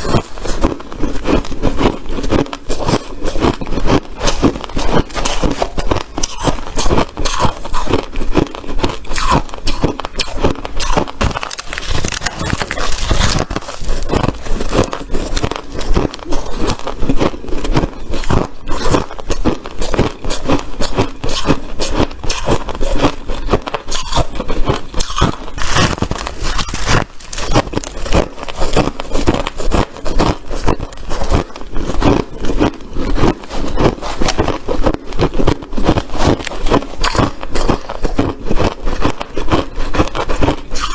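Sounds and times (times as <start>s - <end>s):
ice crunching: 0.0s - 40.9s.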